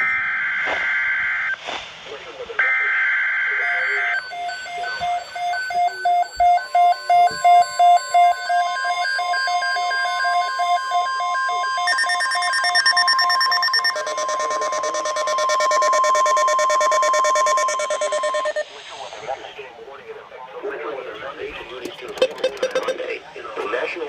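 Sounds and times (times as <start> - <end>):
steady weather radio alarm tone: 0.0 - 1.6, 2.3 - 18.8, 22.2 - 23.1
rapid pulsed alarm beeps: 2.6 - 18.6
fast pulsing beeps: 3.6 - 18.6, 22.2 - 23.0.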